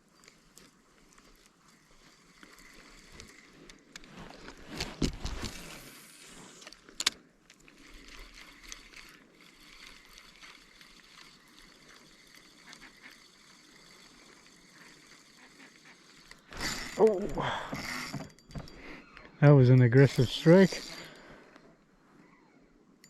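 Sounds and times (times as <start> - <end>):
fishing reel whirring with clicks: 0.0 - 4.8, 5.4 - 23.0.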